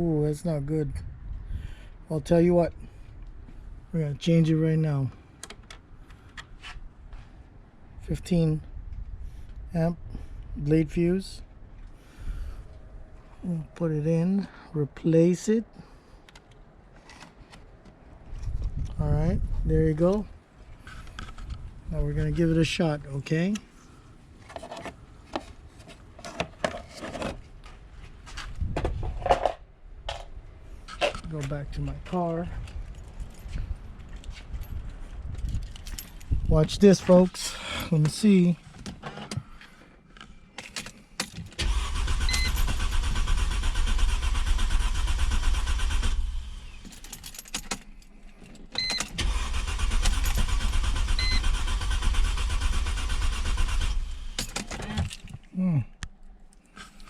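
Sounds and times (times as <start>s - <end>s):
car starter cranking: 40.8s - 46.9s, 48.8s - 55.3s
short electronic beeps: 51.2s - 51.4s.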